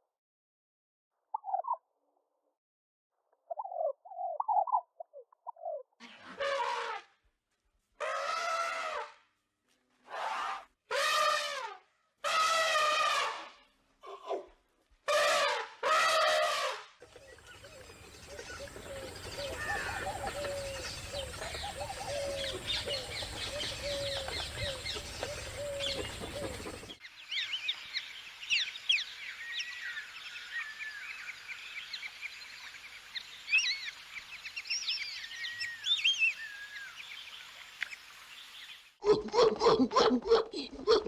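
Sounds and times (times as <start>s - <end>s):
birds calling and chirping: 3.5s - 5.9s, 17.0s - 39.8s
low bird call: 17.1s - 27.0s.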